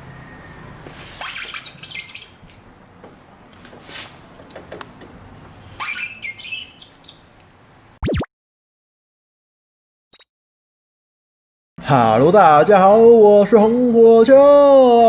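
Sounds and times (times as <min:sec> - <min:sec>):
shrill squeaks of stand on tyre: 0:00.4 - 0:02.4, 0:03.0 - 0:04.8, 0:05.6 - 0:07.3.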